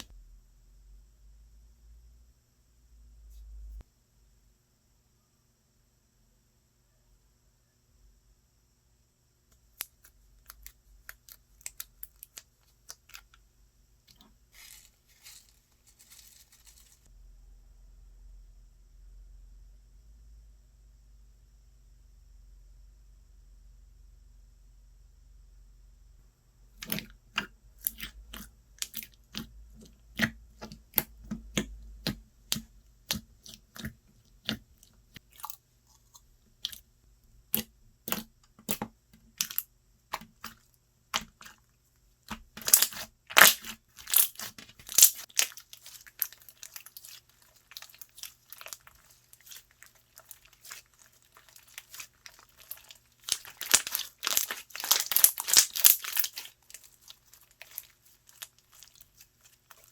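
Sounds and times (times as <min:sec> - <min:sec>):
slime popping and clicking: 0:42.3 - 0:45.6, 0:51.5 - 0:56.8.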